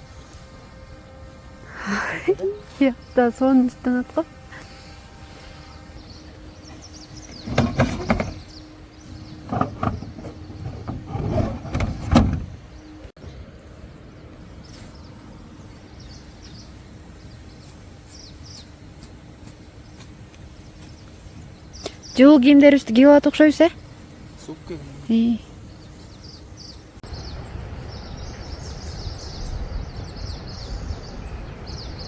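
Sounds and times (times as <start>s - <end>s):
rustling: 5.3s - 13.0s
loud knocks and clatters: 7.2s - 8.5s.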